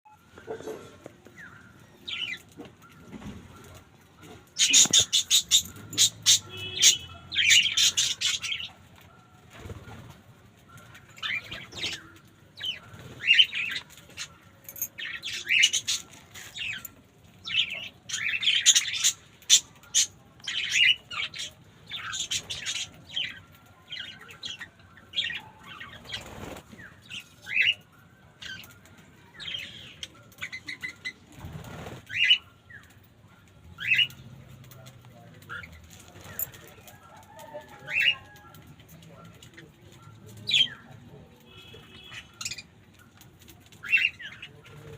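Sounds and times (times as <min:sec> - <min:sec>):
small birds chirping: 0:00.1 - 0:37.2, 0:37.8 - 0:44.9.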